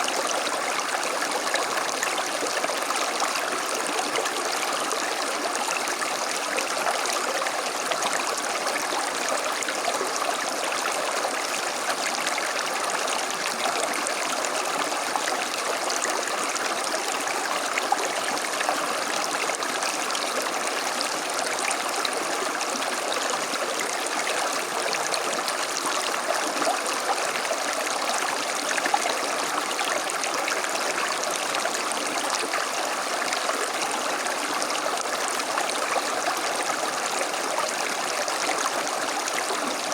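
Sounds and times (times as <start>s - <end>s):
creek babbling over stones: 0.0s - 39.9s.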